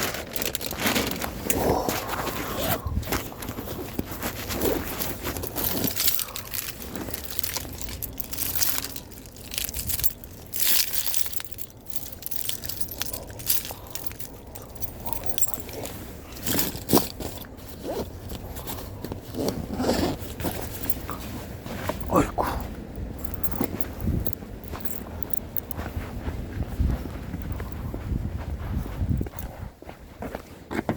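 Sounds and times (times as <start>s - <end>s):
scraping and crinkling: 0.0s - 26.0s
knocks and clicks of handling: 23.0s - 25.8s.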